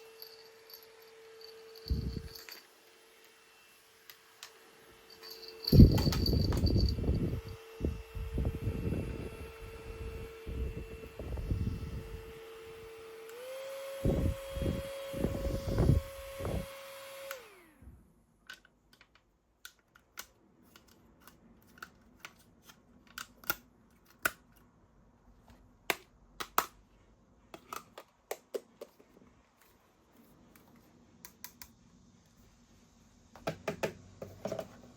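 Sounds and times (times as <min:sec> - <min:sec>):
electric fan whirring: 0:00.0 - 0:18.1.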